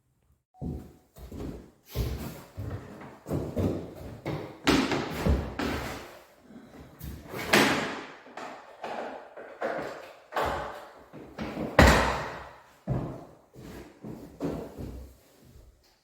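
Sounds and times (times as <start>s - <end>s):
objects knocking and thudding: 2.6s - 6.0s, 6.8s - 13.2s.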